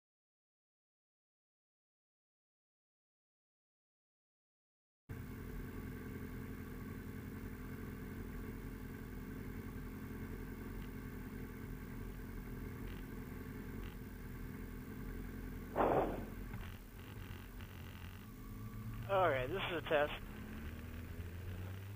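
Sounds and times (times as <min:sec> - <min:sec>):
motorcycle engine idling: 0:05.1 - 0:21.9.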